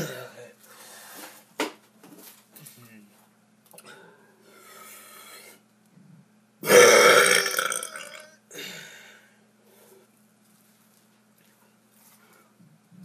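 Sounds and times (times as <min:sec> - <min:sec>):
person burping: 0:06.6 - 0:08.4.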